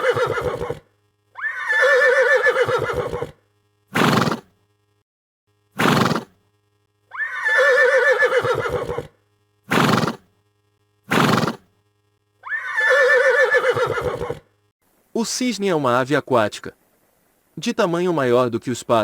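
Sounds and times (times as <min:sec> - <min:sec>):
horse whinnying: 0:00.0 - 0:00.8, 0:01.4 - 0:03.4, 0:07.1 - 0:09.1, 0:09.7 - 0:10.2, 0:11.1 - 0:11.6, 0:12.4 - 0:14.4
short sharp noise bursts: 0:03.9 - 0:04.7, 0:05.7 - 0:06.5, 0:09.6 - 0:10.4, 0:11.0 - 0:11.8.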